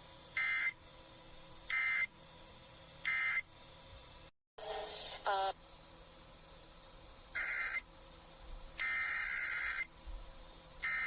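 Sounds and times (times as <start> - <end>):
screechy digital data tones: 7.4 - 7.8, 8.8 - 9.9.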